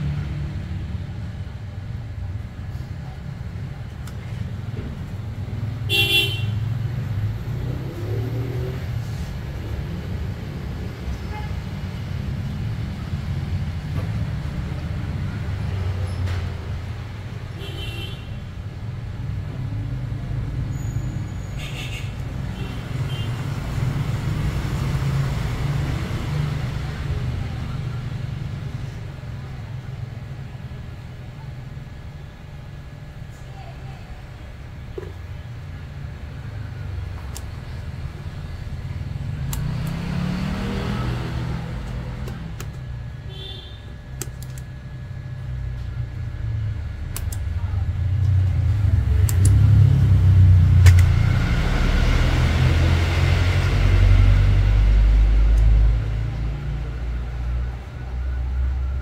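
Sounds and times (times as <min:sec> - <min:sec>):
road traffic rumbling: 0:00.0 - 0:59.0
vehicle horn toots: 0:05.9 - 0:06.6, 0:43.3 - 0:43.9.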